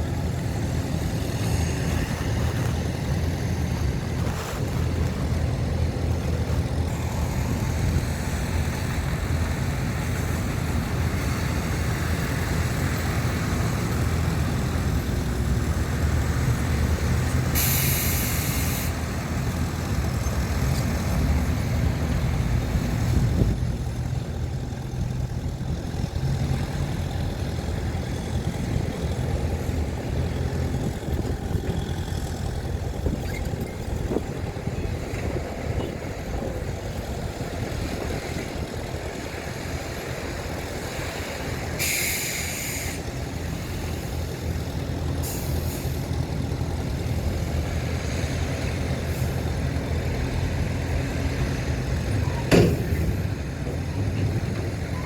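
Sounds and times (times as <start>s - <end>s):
heavy diesel engines running: 0.0s - 55.0s
air brake hiss: 17.5s - 19.0s, 41.8s - 43.1s, 45.2s - 46.0s.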